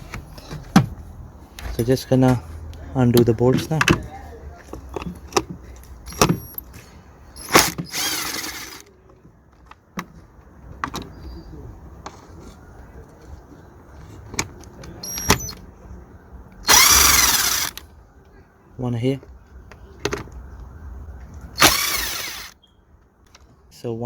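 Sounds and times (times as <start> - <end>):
cordless drill motor whine: 7.4 - 8.8, 16.7 - 17.8, 21.6 - 22.6.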